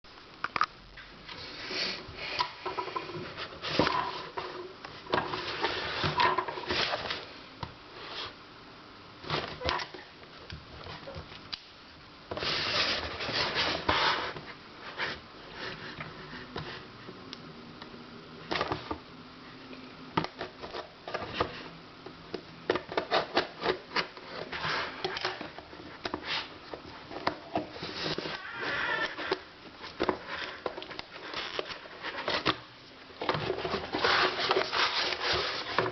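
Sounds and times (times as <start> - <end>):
packaging rustling: 22.9 - 35.9.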